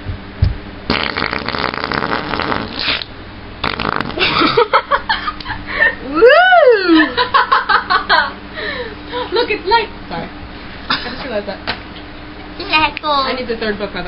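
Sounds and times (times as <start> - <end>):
person making fake fart noises: 0.9 - 4.6
laughter: 4.2 - 6.0, 6.9 - 8.4
person shouting woo: 6.0 - 7.1.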